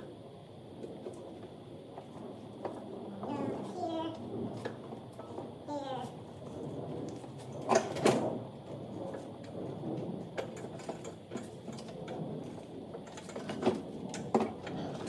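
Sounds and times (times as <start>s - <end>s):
knocks and rattles on mower deck: 7.3s - 9.6s, 10.2s - 15.0s.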